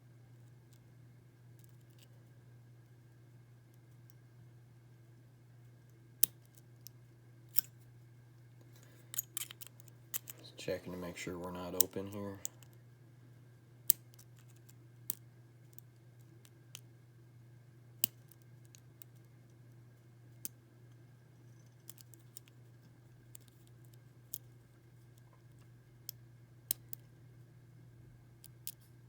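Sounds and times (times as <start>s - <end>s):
low steady hum: 0.0s - 29.0s
lock pick clicking in padlock: 9.2s - 10.4s.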